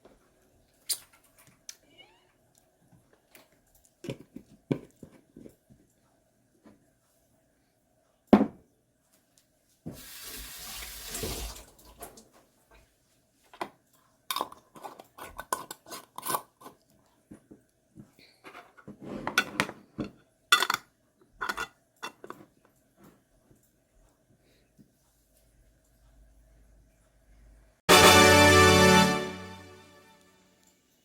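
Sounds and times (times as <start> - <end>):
running tap water: 9.9 - 12.3
dishes and utensils clattering: 18.4 - 22.6.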